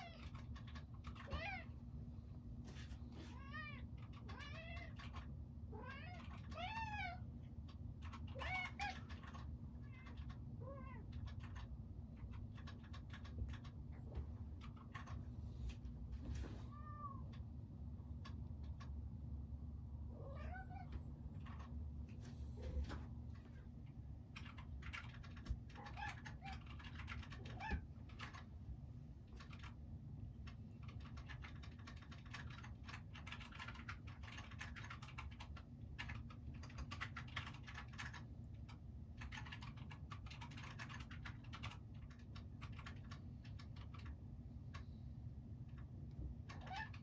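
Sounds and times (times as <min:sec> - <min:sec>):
rapid light clicking and tapping: 0:07.4 - 0:15.2, 0:29.2 - 0:45.0.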